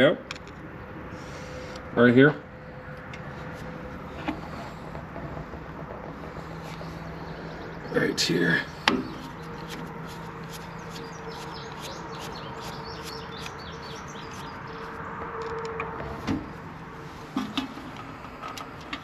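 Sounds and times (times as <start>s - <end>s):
steady low hum: 0.0s - 19.0s
small birds chirping: 6.3s - 15.1s.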